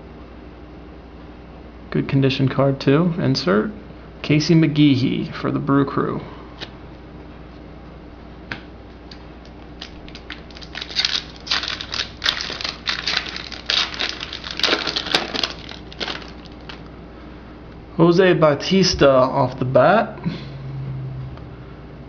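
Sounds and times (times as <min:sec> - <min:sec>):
foil wrapper tearing and crinkling: 0:09.8 - 0:16.9.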